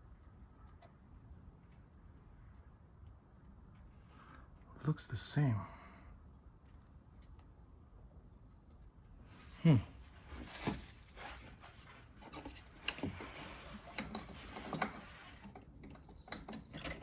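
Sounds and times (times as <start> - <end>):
hard parts knocking and scraping: 10.4 - 17.0.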